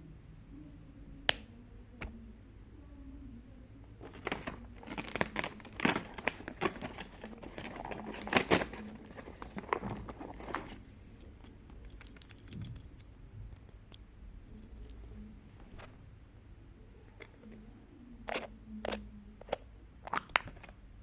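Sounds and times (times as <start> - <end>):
wrapping crinkling and tearing: 4.0 - 10.8.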